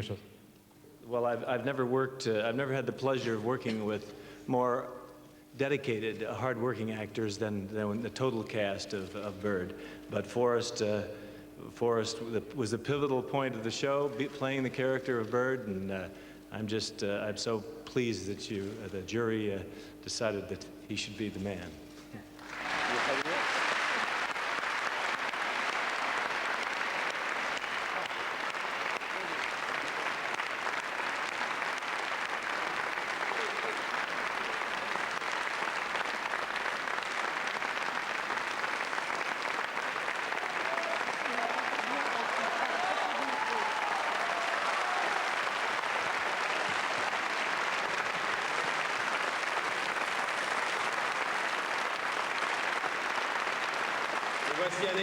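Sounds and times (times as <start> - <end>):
audience applauding: 22.4 - 55.0.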